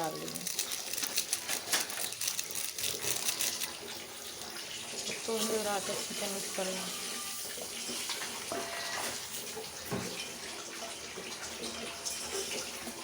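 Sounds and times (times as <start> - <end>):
faint scrapes in a pot: 0.0 - 4.4
spices sizzling in hot oil: 0.0 - 10.5.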